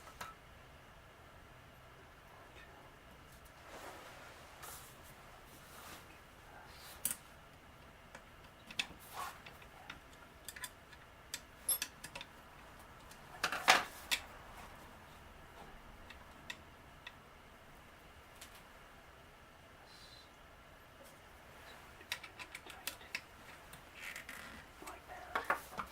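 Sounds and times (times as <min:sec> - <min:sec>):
metal parts and tools clicking: 0:10.4 - 0:12.3.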